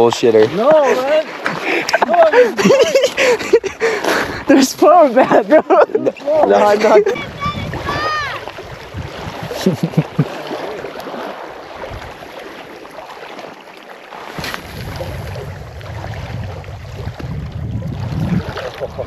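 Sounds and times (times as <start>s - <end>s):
wind buffeting the microphone: 6.6s - 10.2s, 11.6s - 12.4s, 14.4s - 19.0s.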